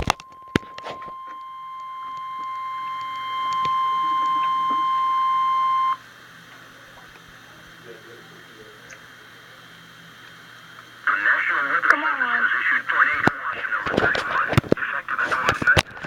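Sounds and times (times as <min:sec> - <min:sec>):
radio warning alarm tone: 0:00.0 - 0:06.5
faint hum: 0:00.0 - 0:16.0.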